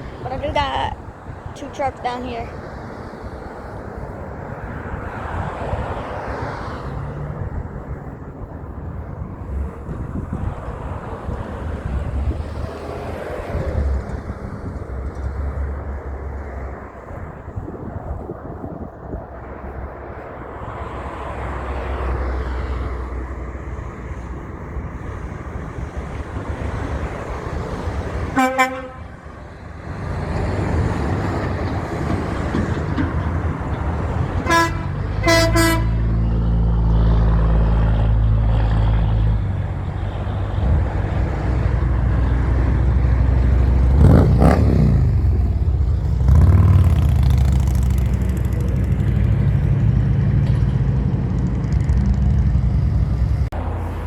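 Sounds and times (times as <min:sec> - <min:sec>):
heavy trucks engine rumble: 0:00.0 - 0:54.0
truck horn blasts: 0:28.3 - 0:29.4, 0:34.4 - 0:36.4.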